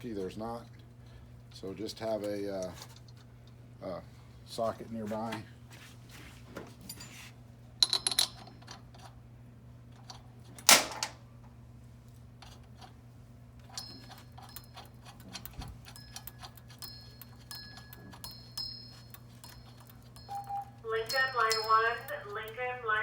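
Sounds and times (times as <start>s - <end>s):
steady low hum: 0.0s - 23.0s
metal tools clinking: 7.8s - 8.7s, 13.6s - 23.0s
ratchet ticking: 13.8s - 20.6s.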